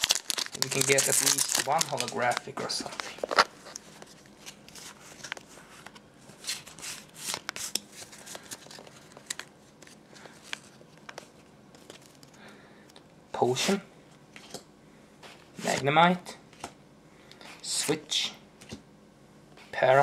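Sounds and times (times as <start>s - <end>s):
foil wrapper crinkling: 0.0s - 5.5s
cards rustling and clicking: 0.0s - 12.4s.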